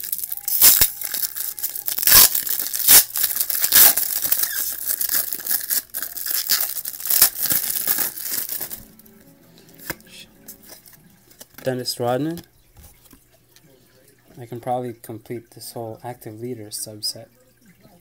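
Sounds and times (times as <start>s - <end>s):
foil wrapper tearing and crinkling: 0.0s - 8.9s.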